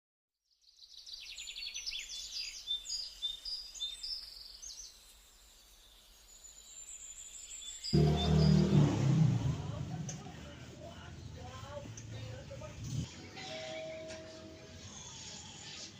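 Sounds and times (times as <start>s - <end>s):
birds chirping and trilling: 0.7s - 9.1s
faint steady hiss: 1.4s - 13.5s.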